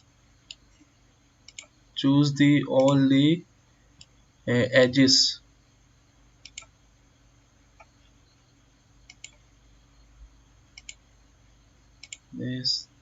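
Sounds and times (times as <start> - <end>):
computer mouse clicking: 0.0 - 1.8, 2.8 - 3.0, 6.4 - 6.8, 9.0 - 9.4, 10.7 - 11.0, 12.0 - 12.3.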